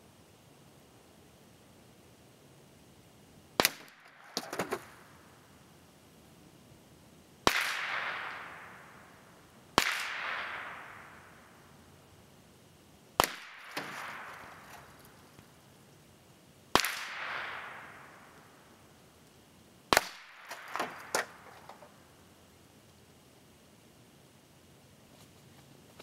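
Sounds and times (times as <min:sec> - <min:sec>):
rifle shots with echo: 0:03.6 - 0:05.0, 0:07.4 - 0:09.1, 0:09.8 - 0:11.4, 0:13.2 - 0:14.9, 0:16.7 - 0:18.4, 0:19.9 - 0:21.4
faint sharp cracks: 0:03.6 - 0:05.1, 0:07.5 - 0:08.9, 0:09.8 - 0:11.2, 0:13.2 - 0:15.6, 0:16.8 - 0:18.5, 0:19.2 - 0:22.0.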